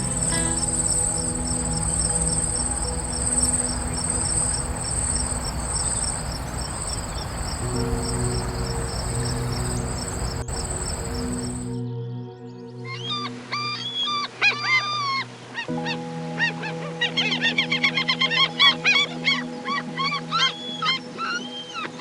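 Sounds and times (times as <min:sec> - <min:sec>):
insect trilling: 0:00.0 - 0:11.7.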